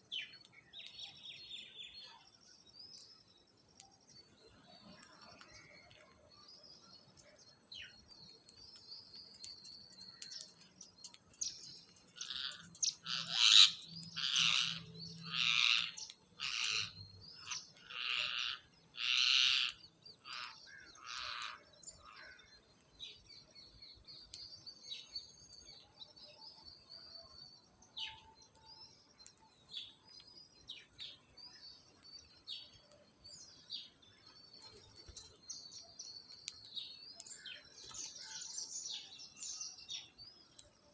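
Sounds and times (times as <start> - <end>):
faint chirping: 0.0 - 40.9
parrots calling loudly: 12.2 - 19.8.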